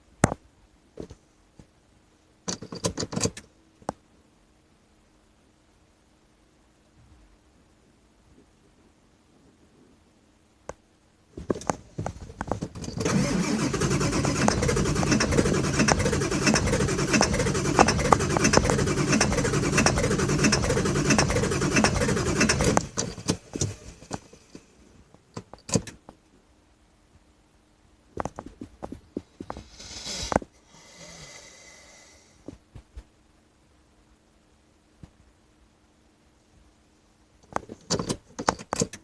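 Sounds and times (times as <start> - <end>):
engine starter cranking: 12.6 - 24.4.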